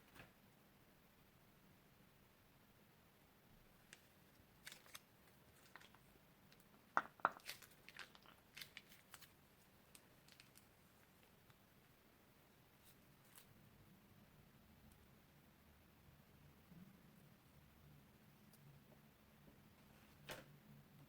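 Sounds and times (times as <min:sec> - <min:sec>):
crisp clicks and crackles: 0:03.9 - 0:11.6.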